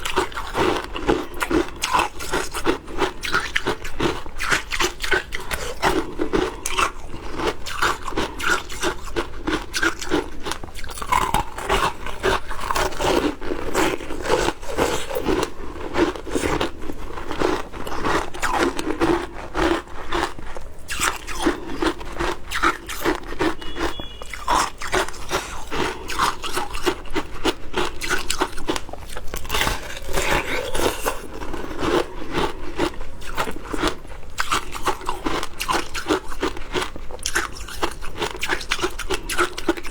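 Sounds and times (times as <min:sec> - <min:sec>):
shaved ice being chewed: 0:00.0 - 0:39.9.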